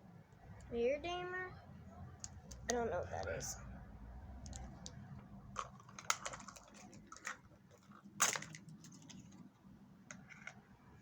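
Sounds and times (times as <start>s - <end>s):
plastic packaging clicks and crinkles: 4.4s - 10.6s.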